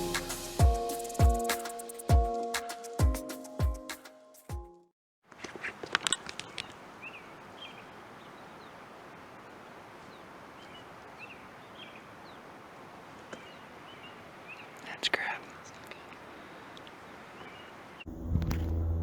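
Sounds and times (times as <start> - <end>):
outdoor hiss: 0.0 - 1.7
music track: 0.0 - 4.8
clicks and rustles: 5.3 - 6.8.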